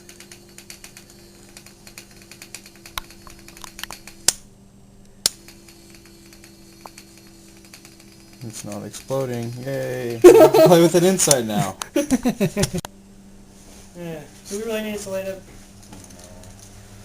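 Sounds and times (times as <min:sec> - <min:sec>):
vibrator motor buzzing: 0:00.0 - 0:11.8.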